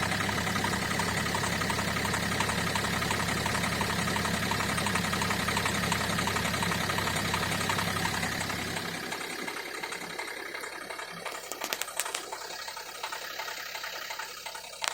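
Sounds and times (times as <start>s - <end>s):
diesel engine idling: 0.0s - 14.9s
sharp clicks: 11.3s - 12.5s.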